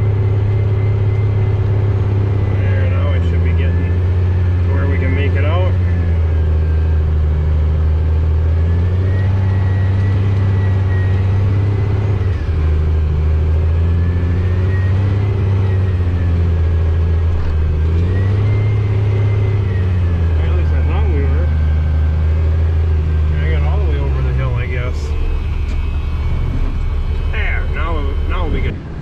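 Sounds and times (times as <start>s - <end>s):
truck engine under load: 0.0s - 29.0s.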